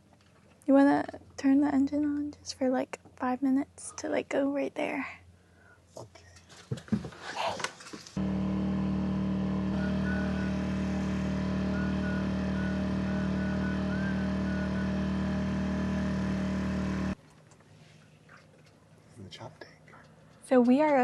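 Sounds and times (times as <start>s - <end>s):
boat engine humming: 8.2s - 17.2s.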